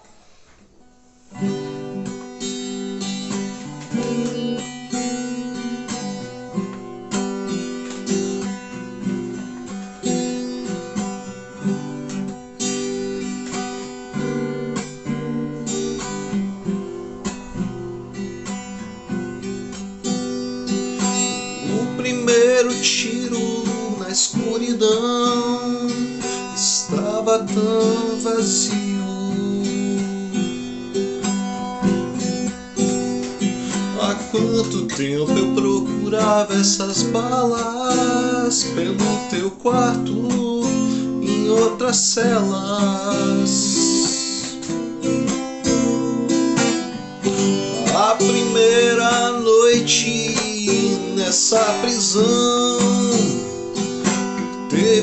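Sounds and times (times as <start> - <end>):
acoustic guitar strumming chords: 0.0 - 55.0
person singing: 21.5 - 30.8, 33.8 - 44.7, 47.2 - 53.8, 54.4 - 55.0.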